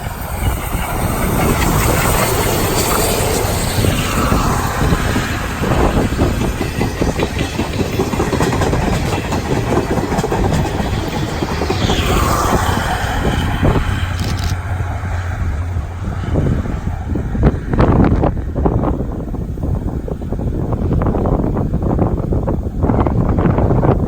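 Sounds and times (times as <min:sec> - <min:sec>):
train wheels clattering over rail joints: 0:00.0 - 0:15.6
train low rumble: 0:00.0 - 0:24.0.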